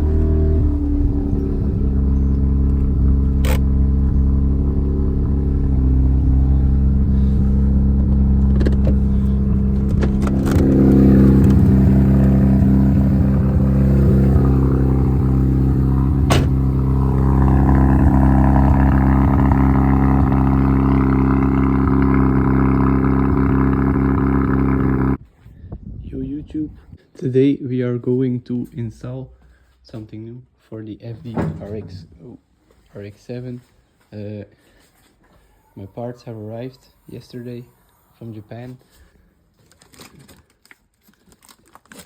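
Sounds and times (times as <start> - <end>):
rotary engine idling: 0.0 - 25.2.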